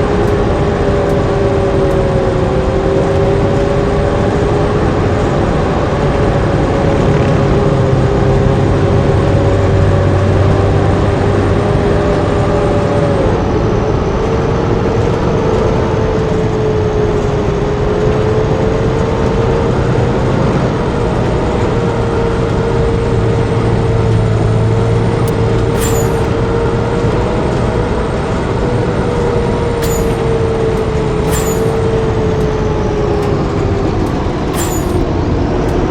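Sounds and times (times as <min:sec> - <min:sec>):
bus engine droning: 0:00.0 - 0:35.9
whine shifting in pitch: 0:25.8 - 0:26.4, 0:29.8 - 0:35.9.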